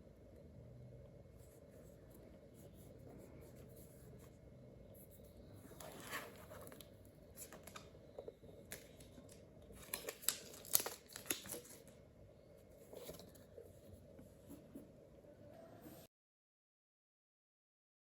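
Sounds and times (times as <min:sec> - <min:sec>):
packaging crinkling and tearing: 0:08.7 - 0:12.0.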